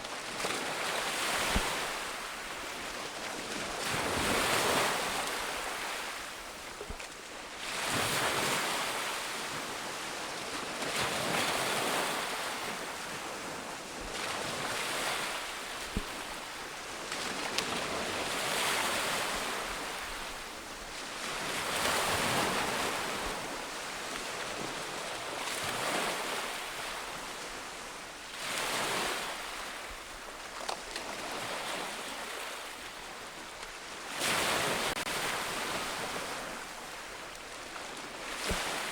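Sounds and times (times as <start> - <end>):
ocean waves breaking: 0.0 - 6.7, 10.8 - 27.0, 34.0 - 38.9
wind: 0.0 - 38.9.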